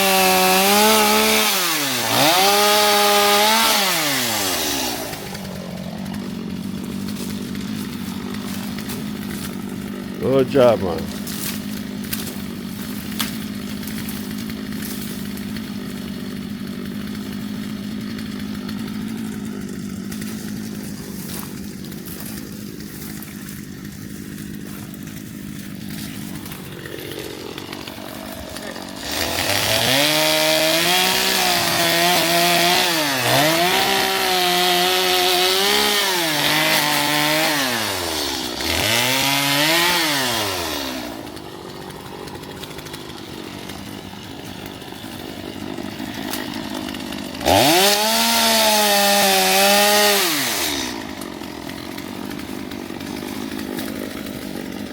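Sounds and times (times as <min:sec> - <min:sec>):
chainsaw idling and revving: 0:00.0 - 0:54.9.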